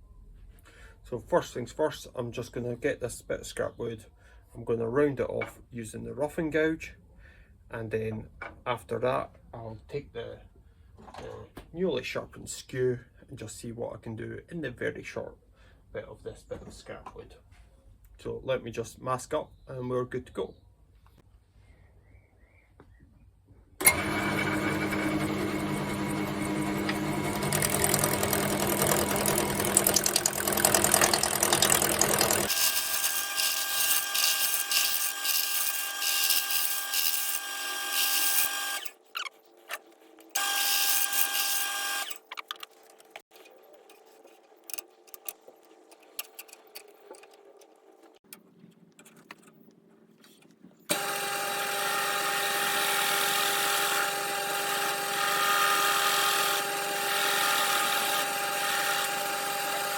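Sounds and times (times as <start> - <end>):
wood lathe motor: 23.8 - 39.0, 40.3 - 42.3, 50.9 - 59.9
turning tool cutting wood: 23.8 - 45.4, 50.9 - 59.9.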